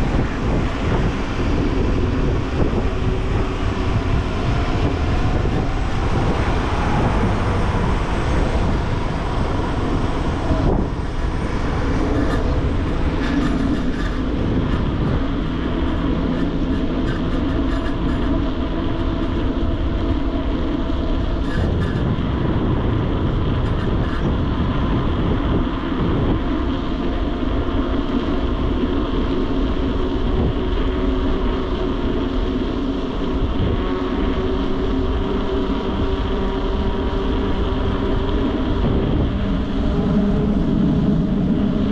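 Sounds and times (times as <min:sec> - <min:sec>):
bicycle tyre rumble: 0:00.0 - 0:41.9
rushing wind: 0:00.0 - 0:41.9.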